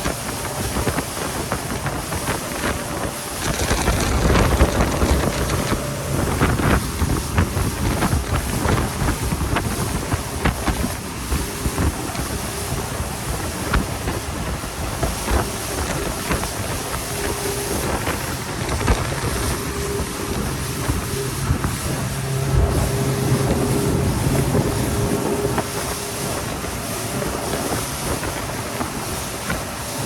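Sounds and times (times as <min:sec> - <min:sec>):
motorboat engine droning: 0:00.0 - 0:30.0
wind buffeting microphone: 0:00.0 - 0:30.0.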